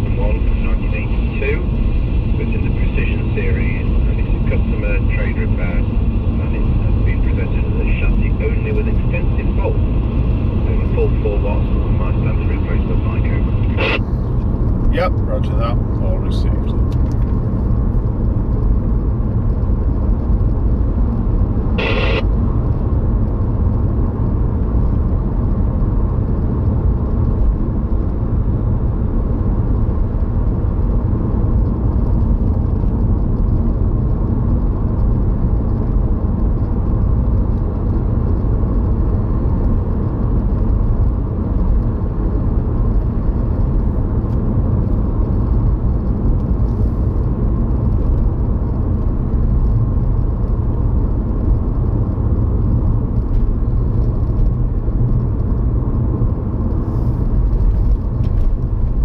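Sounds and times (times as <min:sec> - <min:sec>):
car engine and road rumble: 0:00.0 - 0:59.0.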